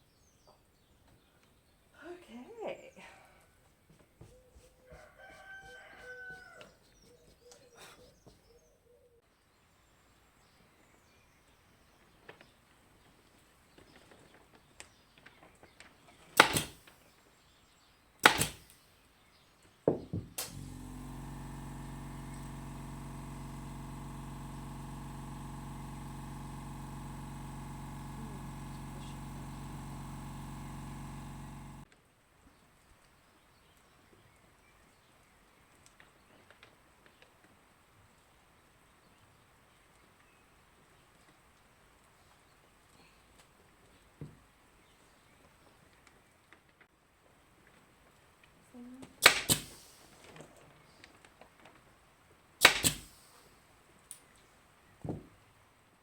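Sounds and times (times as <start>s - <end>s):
distant rooster crowing: 4.8s - 6.8s
air compressor motor running: 18.2s - 18.6s, 20.4s - 31.8s, 49.2s - 50.0s, 52.6s - 53.2s.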